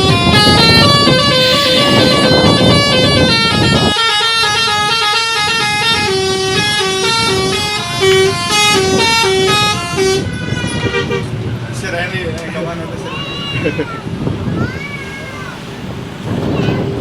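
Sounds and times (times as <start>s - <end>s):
musical truck horn melody: 0.0s - 11.5s.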